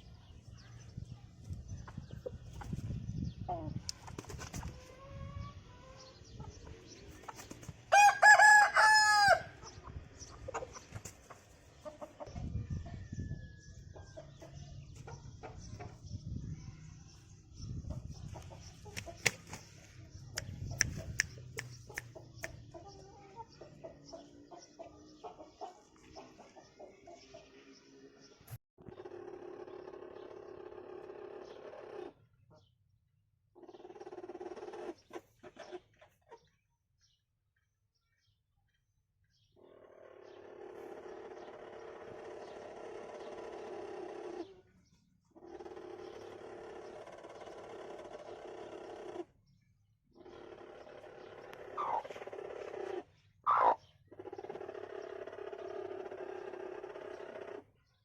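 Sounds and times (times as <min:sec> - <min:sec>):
rooster crowing: 0:07.9 - 0:09.6
chickens clucking faintly: 0:33.6 - 0:36.7, 0:50.1 - 0:57.8.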